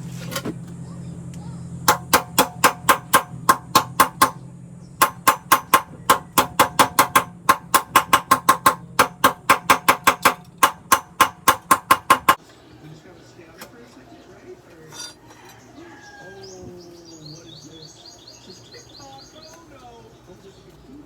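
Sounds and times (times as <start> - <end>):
steady low hum: 0.0 - 21.0
rapid metal-on-metal tapping: 1.8 - 12.4.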